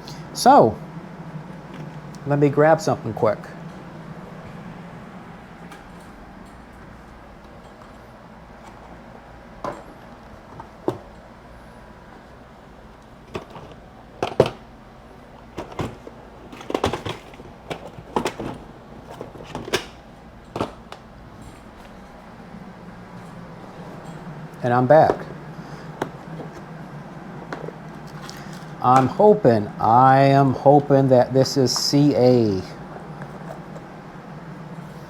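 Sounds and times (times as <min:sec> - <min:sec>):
objects knocking and clattering: 0:09.6 - 0:11.2, 0:13.2 - 0:14.6, 0:15.5 - 0:22.2.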